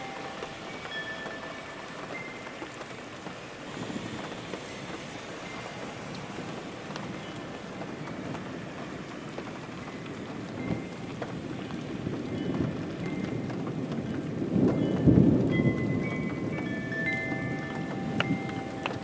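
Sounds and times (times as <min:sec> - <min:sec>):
steady rain: 0:00.0 - 0:19.0
low thunder rumble: 0:06.4 - 0:19.0.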